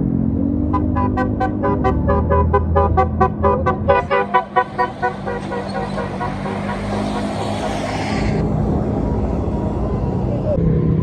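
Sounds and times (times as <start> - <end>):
bus engine running: 0.0 - 11.0
bus horn playing quick tune: 0.7 - 8.2.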